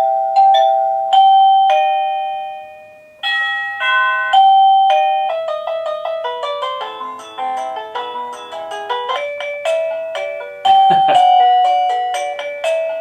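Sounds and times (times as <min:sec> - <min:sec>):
electronic doorbell chimes: 0:00.0 - 0:13.0
quick chime tune: 0:10.6 - 0:11.4.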